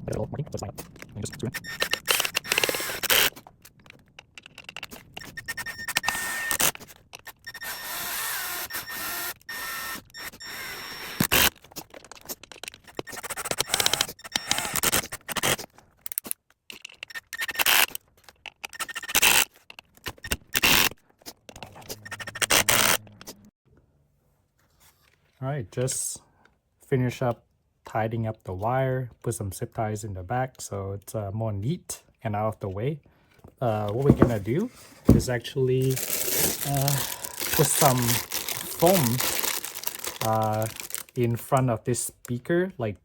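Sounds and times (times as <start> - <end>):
screws driven into plastic: 1.5 - 3.4, 4.2 - 11.6, 12.8 - 20.9, 35.9 - 41.1.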